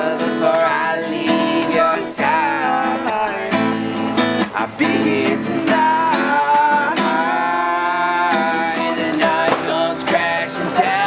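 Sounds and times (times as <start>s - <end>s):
person singing: 0.0s - 11.0s
strummed acoustic guitar: 0.0s - 11.0s.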